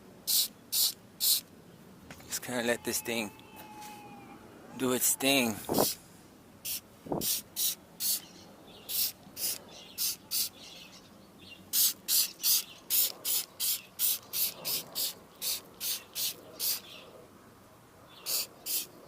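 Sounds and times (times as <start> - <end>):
spray bottle hisses: 0.3 - 1.4, 6.6 - 8.2, 8.9 - 10.5, 11.7 - 16.8, 18.3 - 18.9.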